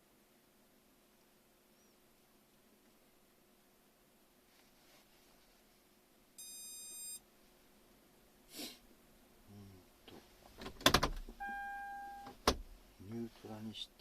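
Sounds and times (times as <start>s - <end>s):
rustle: 0.0s - 6.4s, 12.2s - 14.0s
electronic beep: 6.4s - 7.2s, 11.4s - 12.3s.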